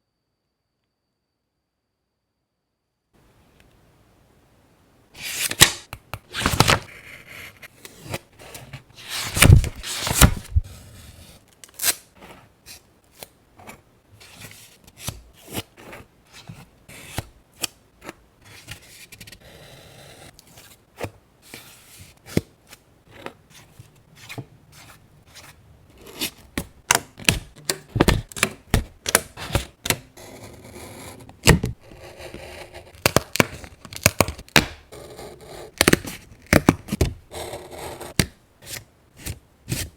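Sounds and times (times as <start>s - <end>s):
paper rustling and scraping: 5.2s - 12.8s.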